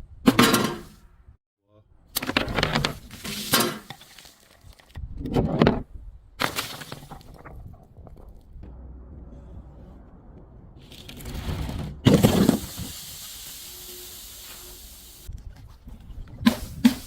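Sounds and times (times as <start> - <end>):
steady hiss: 12.5 - 15.3.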